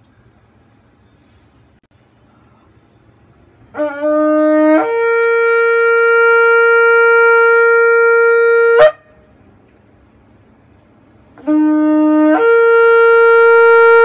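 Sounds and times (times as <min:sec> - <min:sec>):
shofar blowing: 0:03.7 - 0:09.2, 0:11.4 - 0:14.0.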